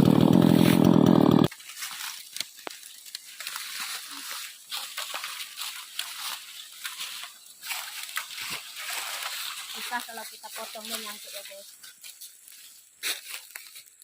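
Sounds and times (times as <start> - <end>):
leaves and twigs rustling: 0.4 - 14.0
twigs snapping: 1.5 - 9.7.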